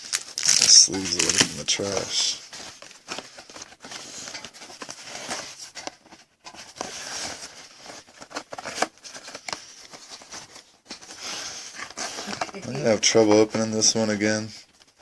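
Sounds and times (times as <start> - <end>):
wrapper rustling and crinkling: 0.0 - 15.0.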